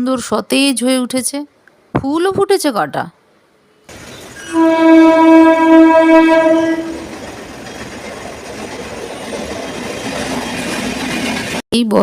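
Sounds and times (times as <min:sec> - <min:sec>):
train horn blast: 0:04.4 - 0:07.1.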